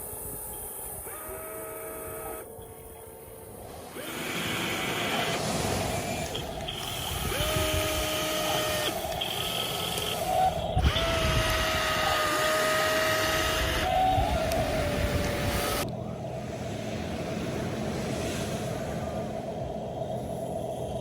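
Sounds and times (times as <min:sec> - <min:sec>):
small electric motors whining: 0:00.0 - 0:15.9.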